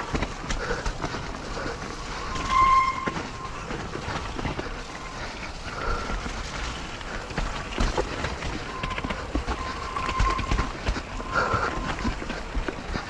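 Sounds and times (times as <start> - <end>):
bike rattling and clattering: 0.0 - 13.0
tyres crunching over rocks: 0.0 - 13.0
high squeal: 2.0 - 4.1, 8.6 - 12.0.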